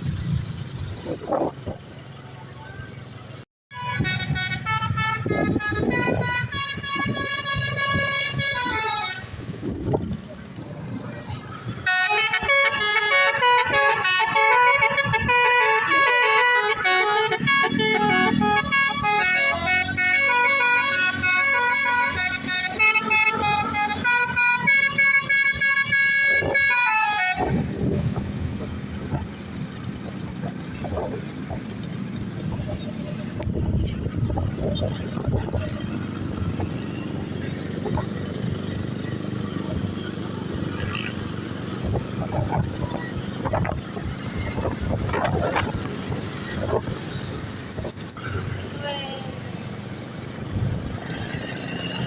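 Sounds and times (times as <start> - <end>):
wind buffeting microphone: 0.0 - 2.0, 3.9 - 12.6, 23.6 - 48.9, 49.6 - 52.0
low rumble of vehicle: 0.0 - 52.0
multi-tone musical air horn: 3.7 - 9.4, 11.8 - 27.8.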